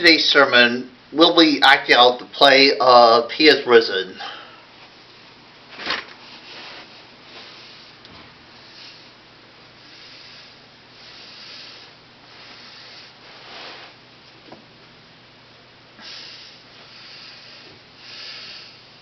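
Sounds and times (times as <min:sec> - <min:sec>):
soft breathing: 0:06.3 - 0:14.0, 0:16.0 - 0:19.0.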